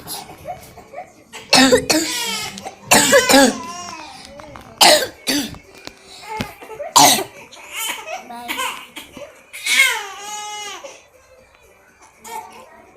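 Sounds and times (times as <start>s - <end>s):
person coughing: 1.5s - 2.1s, 2.9s - 3.6s, 4.8s - 5.5s, 6.9s - 7.3s.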